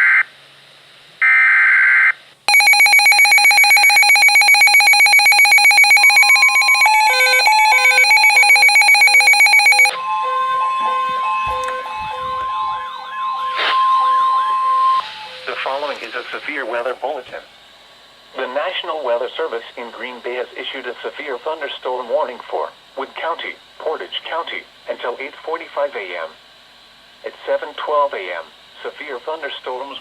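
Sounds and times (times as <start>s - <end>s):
pulsing electronic attention tone: 2.5s - 15.4s
steady alert tone with warble: 2.5s - 15.8s.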